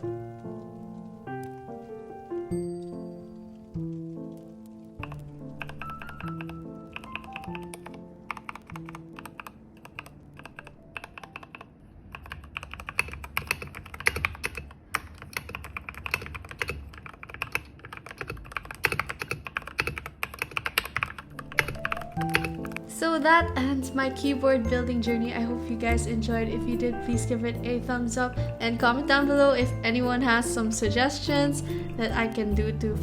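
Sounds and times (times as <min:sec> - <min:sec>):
background music: 0:00.0 - 0:11.8, 0:21.2 - 0:33.0
mechanical keyboard typing: 0:05.0 - 0:23.7.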